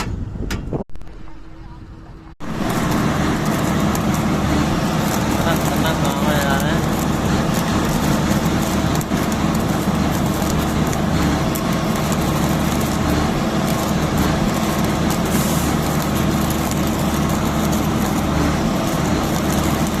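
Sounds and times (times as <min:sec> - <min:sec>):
engine-driven machine running: 0:02.2 - 0:20.0
crackle of sharp ticks: 0:02.5 - 0:20.0.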